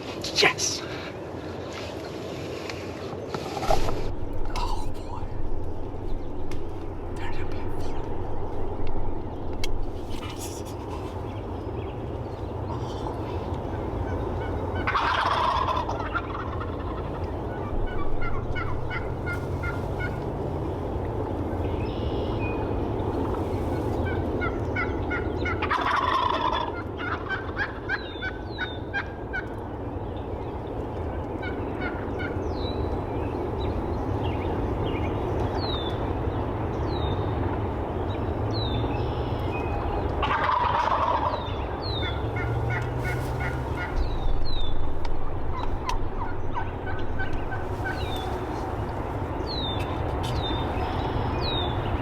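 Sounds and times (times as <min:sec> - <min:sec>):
turkeys gobbling: 0:13.9 - 0:20.4, 0:24.0 - 0:29.5, 0:40.2 - 0:50.6.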